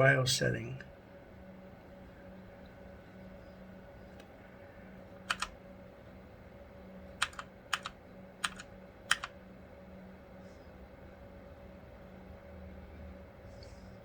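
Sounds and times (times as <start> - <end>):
steady low hum: 0.0 - 14.0
keyboard keystrokes: 5.2 - 5.6, 7.2 - 9.3.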